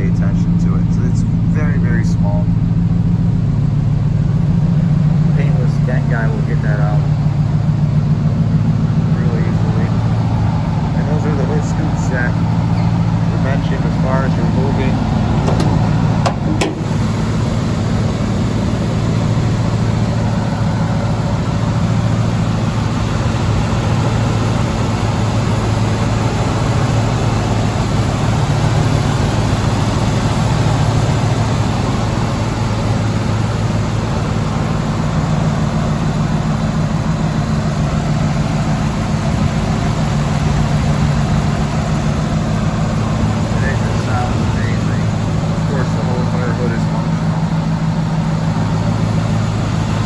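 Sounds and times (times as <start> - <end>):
engine idling: 0.0 - 50.0
short knock: 15.4 - 16.9.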